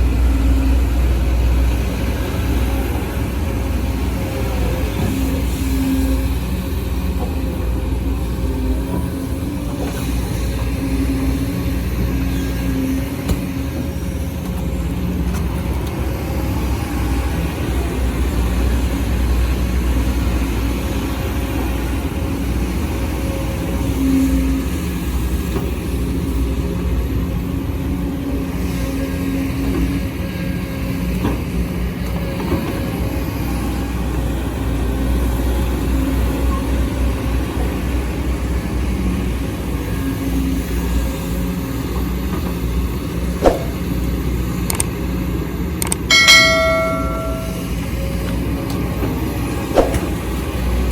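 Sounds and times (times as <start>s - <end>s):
sharp knock: 43.4s - 43.8s, 46.1s - 47.7s, 49.8s - 50.1s.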